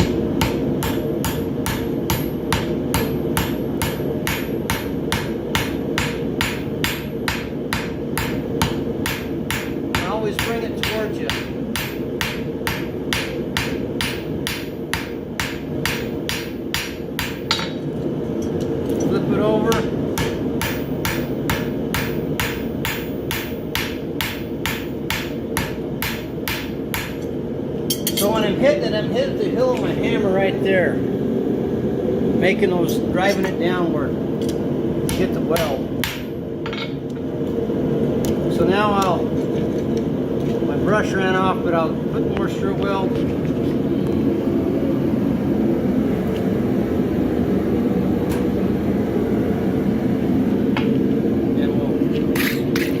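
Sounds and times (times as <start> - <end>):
hammer striking horseshoe on anvil: 0.0 - 17.8, 19.7 - 28.4, 34.4 - 37.0, 52.3 - 53.0
steady low rumble: 0.0 - 53.0.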